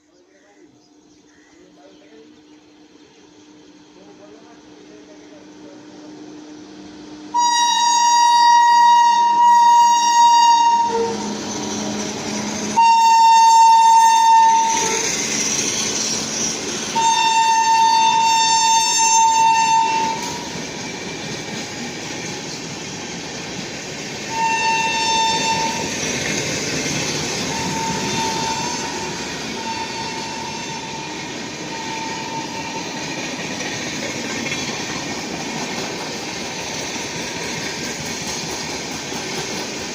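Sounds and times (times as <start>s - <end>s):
train wheels rumbling on track: 0.0s - 39.9s
locomotive air horn blasts: 7.3s - 11.4s, 12.7s - 15.2s, 17.0s - 20.5s, 24.3s - 26.1s, 27.4s - 33.0s.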